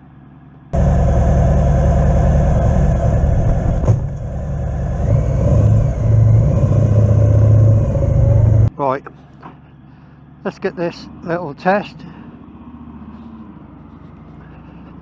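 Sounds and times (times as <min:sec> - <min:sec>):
motorcycle engine running: 0:00.8 - 0:08.7.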